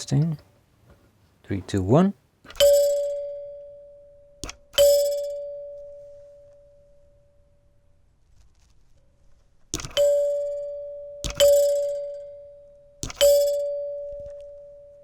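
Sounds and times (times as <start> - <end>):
plunger knock: 2.5 - 7.1, 9.8 - 15.0
door chime ringing tone: 2.5 - 8.1, 9.8 - 15.0.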